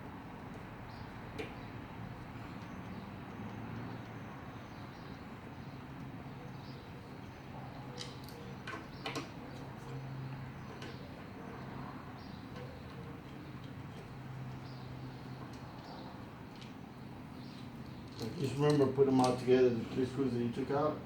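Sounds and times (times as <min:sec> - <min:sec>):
clicks of small metal parts: 0:08.0 - 0:10.0.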